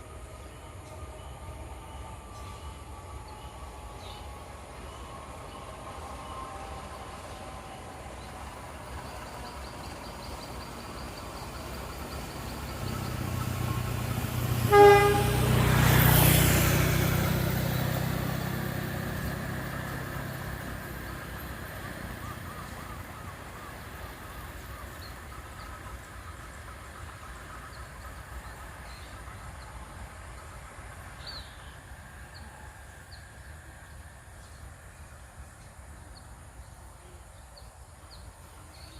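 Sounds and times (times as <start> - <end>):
train rumbling past: 0.0 - 38.9
train horn toot: 14.5 - 16.1.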